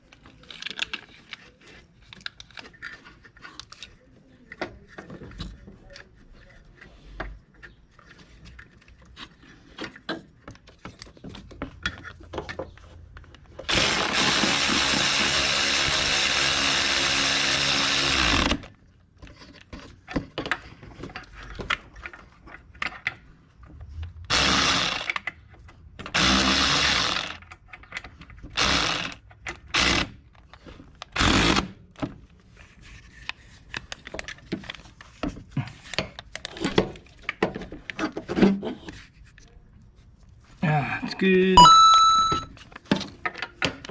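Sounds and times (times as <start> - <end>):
handheld power tool running: 13.7 - 18.6.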